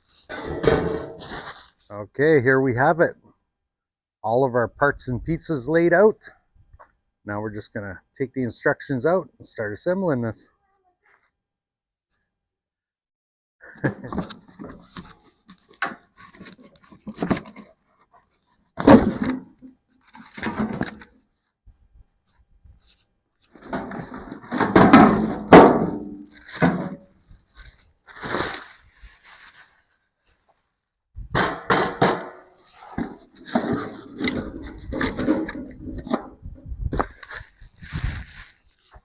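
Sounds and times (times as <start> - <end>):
parts scraping and knocking: 0.1 - 1.7, 14.1 - 21.2, 22.8 - 27.8, 31.4 - 39.0.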